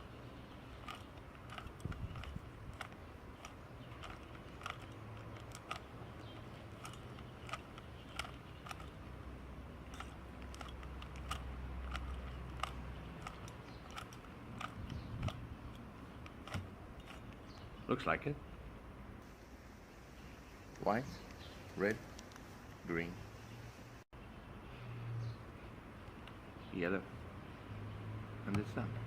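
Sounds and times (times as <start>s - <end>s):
plastic puzzle cube clicking: 0.6s - 9.1s, 9.8s - 17.4s.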